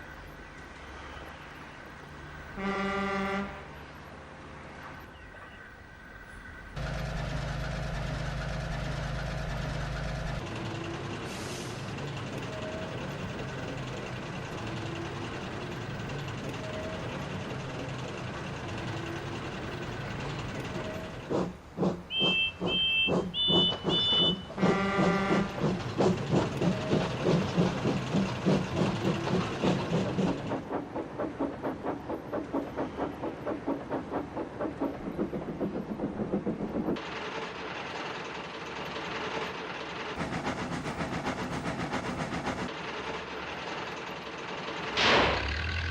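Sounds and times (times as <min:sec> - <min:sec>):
locomotive puffing exhaust: 0:06.8 - 0:37.3, 0:40.0 - 0:43.0
locomotive whistle toots: 0:22.0 - 0:25.8.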